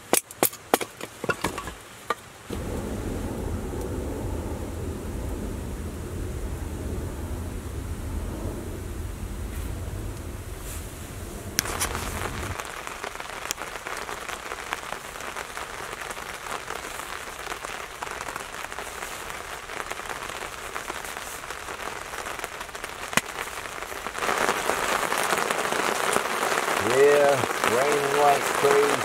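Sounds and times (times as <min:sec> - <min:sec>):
heavy rain pattering: 0:01.0 - 0:29.0
low rumble: 0:02.5 - 0:12.6.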